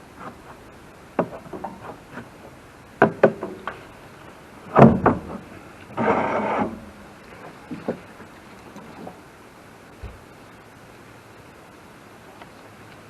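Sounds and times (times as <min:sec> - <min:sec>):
scraping rustle: 0:03.7 - 0:09.2.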